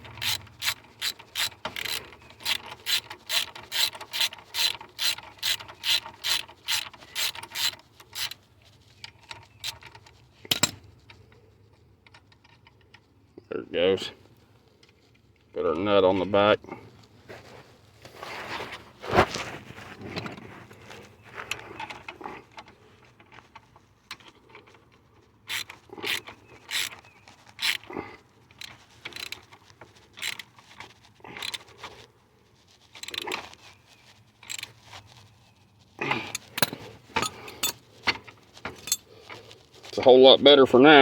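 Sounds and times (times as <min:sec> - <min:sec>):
wrench clicking on bolt: 0:00.0 - 0:08.4, 0:09.2 - 0:10.9, 0:25.5 - 0:27.0, 0:27.6 - 0:27.8, 0:28.5 - 0:29.5, 0:30.2 - 0:30.5, 0:33.0 - 0:33.4.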